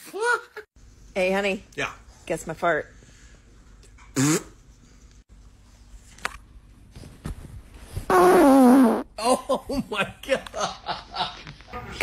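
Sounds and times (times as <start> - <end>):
drawn-out fart: 4.1 - 4.6, 8.1 - 9.1.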